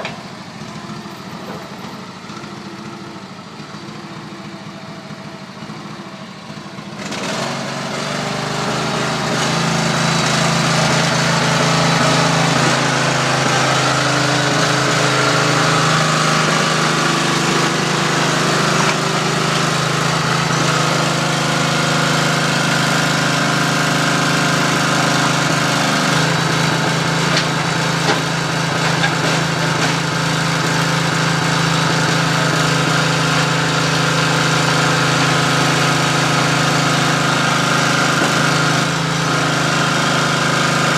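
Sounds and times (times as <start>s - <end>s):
baler motor humming: 8.6s - 37.2s.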